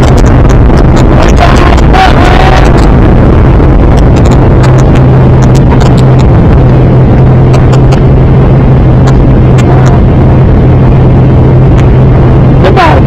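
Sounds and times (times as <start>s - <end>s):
airliner engines roaring: 0.0s - 13.0s.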